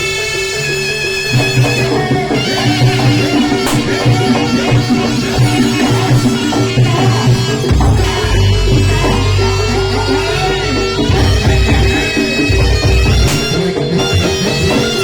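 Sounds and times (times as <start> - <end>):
gamelan percussion: 0.0 - 15.0
shrill reedy shawm melody: 0.0 - 15.0
gong tones: 6.7 - 13.7.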